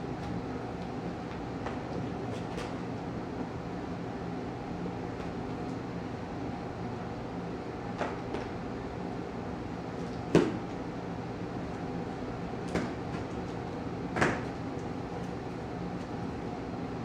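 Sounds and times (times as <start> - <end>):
steady low hum: 0.0 - 17.0
knocks on cardboard carton: 10.3 - 10.6.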